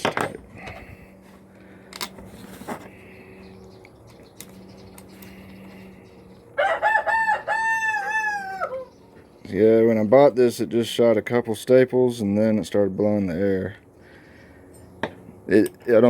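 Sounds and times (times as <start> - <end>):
rooster crowing: 6.6 - 9.0.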